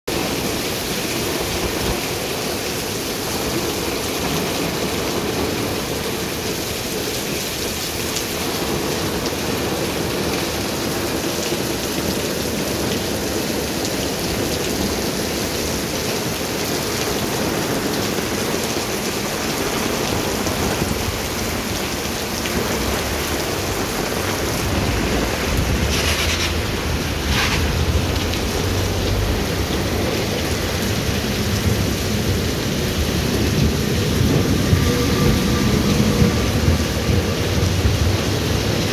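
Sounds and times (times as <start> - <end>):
steady rain hiss: 0.2 - 38.9
low rumble: 20.9 - 30.9.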